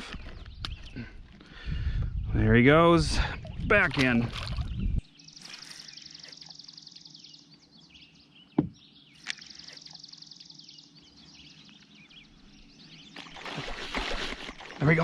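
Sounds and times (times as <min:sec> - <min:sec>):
songbird high-pitched trill: 0:04.6 - 0:13.2.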